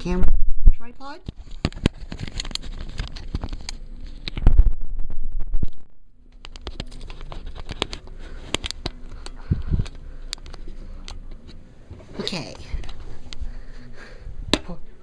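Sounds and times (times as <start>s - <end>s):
camera handling clicks and scrapes: 1.3s - 4.4s, 6.4s - 11.6s.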